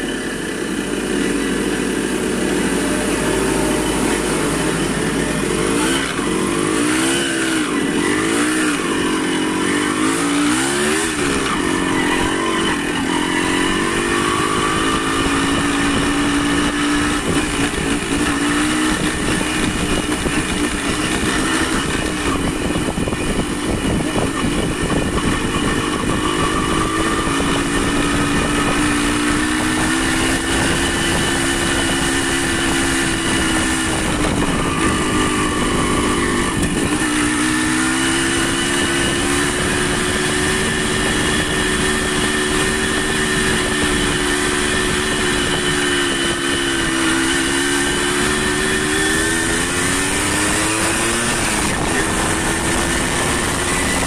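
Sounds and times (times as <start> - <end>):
vehicle engine running: 0.0 - 54.0.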